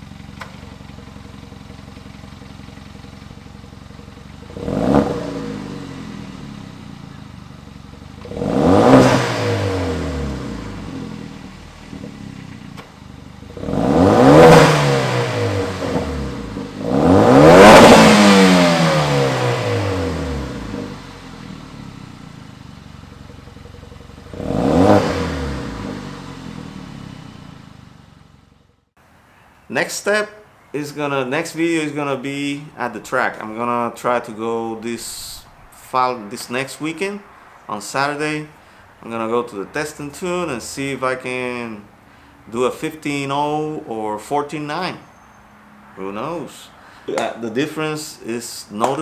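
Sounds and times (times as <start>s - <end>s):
car engine idling and revving: 0.0s - 29.1s.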